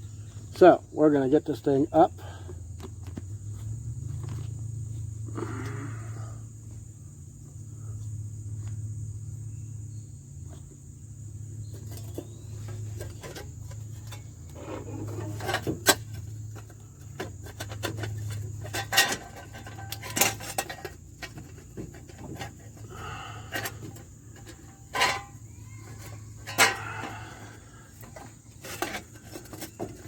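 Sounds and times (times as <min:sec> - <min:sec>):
steady low hum: 0:00.0 - 0:30.0
metal clinks and knocks: 0:11.6 - 0:22.9, 0:23.5 - 0:30.0
sharp metal clanks: 0:24.9 - 0:25.4.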